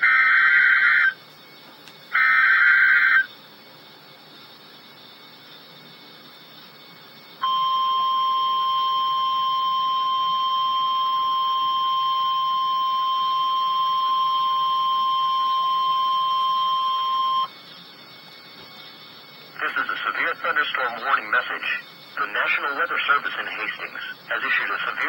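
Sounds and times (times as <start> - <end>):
faint radio hiss: 14.1 - 25.0.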